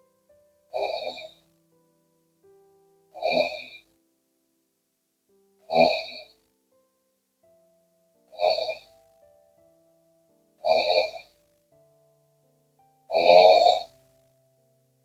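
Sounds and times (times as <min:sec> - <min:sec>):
woman snoring: 0:00.8 - 0:01.4, 0:03.2 - 0:03.8, 0:05.7 - 0:06.3, 0:08.4 - 0:08.9, 0:10.6 - 0:11.3, 0:13.1 - 0:14.0.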